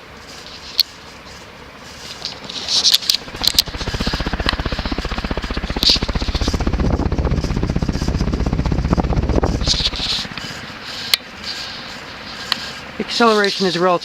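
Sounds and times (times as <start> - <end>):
ceiling fan pulsing thrum: 3.0 - 13.0.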